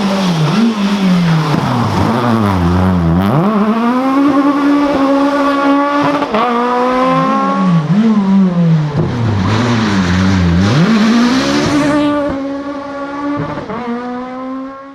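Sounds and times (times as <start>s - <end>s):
rally car engine revving: 0.0s - 14.9s.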